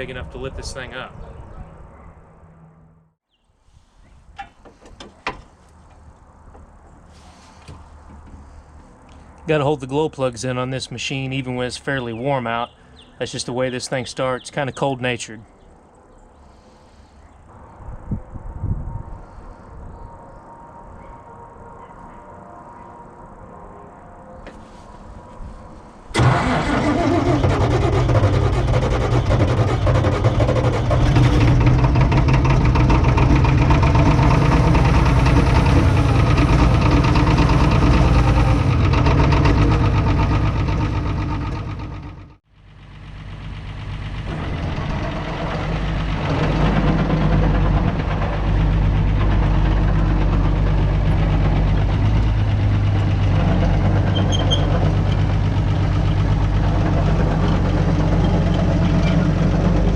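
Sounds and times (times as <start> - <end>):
diesel engine knocking clatter: 27.2 - 59.9.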